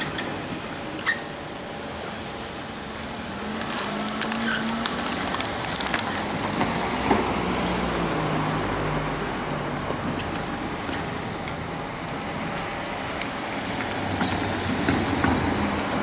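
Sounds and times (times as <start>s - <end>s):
vehicle passing by: 2.0s - 16.0s
sharp clicks: 3.6s - 6.2s.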